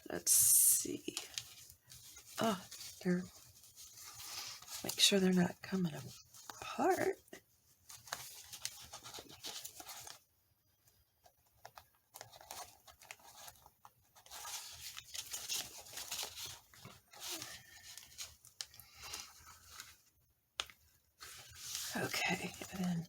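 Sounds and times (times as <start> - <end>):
paper envelopes rustling: 1.0 - 10.3, 11.4 - 23.0
small taps and clicks: 20.6 - 20.8.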